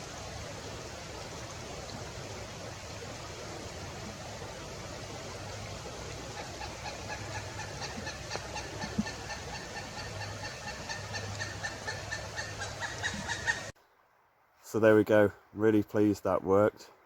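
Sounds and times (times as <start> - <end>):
forest background hiss: 0.0 - 17.0
woodpecker calling: 6.3 - 13.8.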